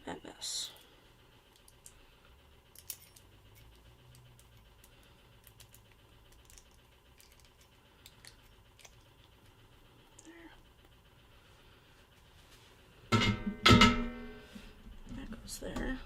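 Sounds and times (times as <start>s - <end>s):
small plastic parts clicking: 4.1s - 9.1s.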